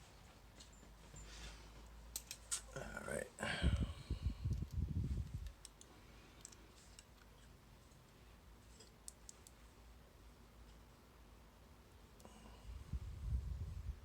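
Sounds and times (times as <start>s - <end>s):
small metal parts clicking: 2.1s - 2.6s.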